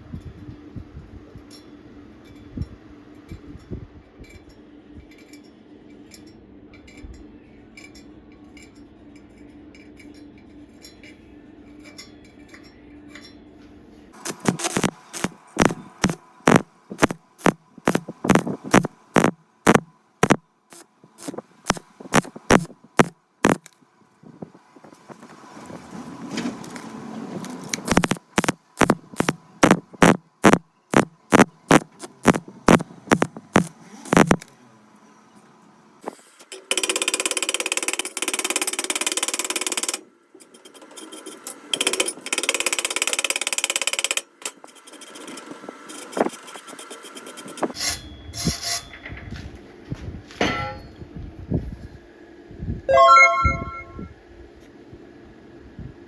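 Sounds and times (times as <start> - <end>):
steady low hum: 14.2 - 25.3, 27.7 - 34.5.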